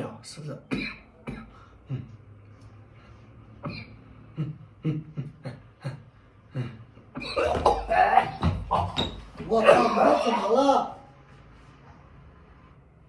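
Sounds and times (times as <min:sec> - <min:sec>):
man clearing throat: 0:00.6 - 0:02.2, 0:03.6 - 0:06.0, 0:06.6 - 0:10.5
man coughing: 0:00.6 - 0:02.2, 0:03.6 - 0:06.0, 0:06.6 - 0:10.6.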